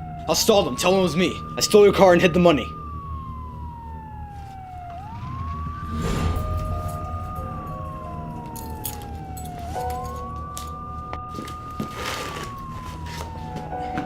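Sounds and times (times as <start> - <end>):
siren wailing: 0.0 - 14.0
low steady rumble: 2.8 - 9.7
rush of noise: 5.1 - 8.7.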